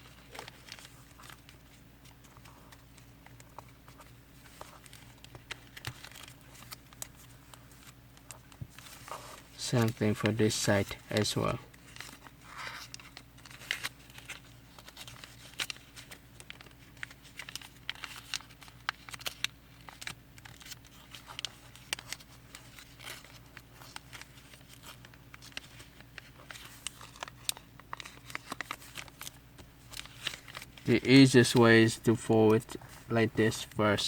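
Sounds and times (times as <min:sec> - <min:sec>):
paper crinkling and rustling: 0:00.0 - 0:34.0
paper creases ticking: 0:09.6 - 0:34.0.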